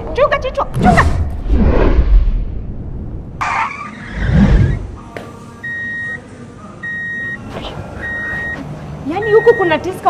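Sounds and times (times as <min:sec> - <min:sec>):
low rumbling: 0:00.6 - 0:03.5.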